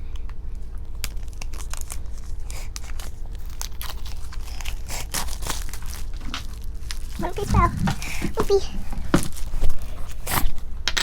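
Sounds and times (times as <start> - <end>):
puzzle pieces scraping: 7.1 - 9.6.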